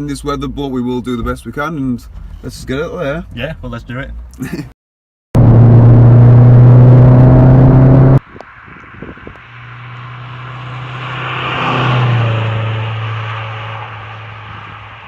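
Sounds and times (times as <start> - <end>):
car engine running loud: 5.4 - 15.0
car driving past: 5.7 - 15.0.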